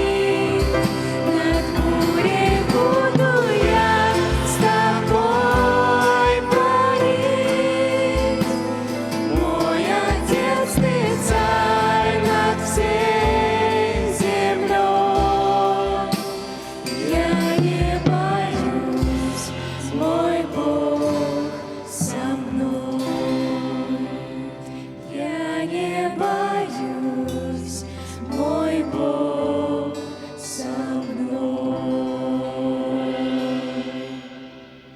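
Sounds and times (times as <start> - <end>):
instrumental accompaniment: 0.0 - 27.6
youth choir singing a hymn: 0.0 - 34.9.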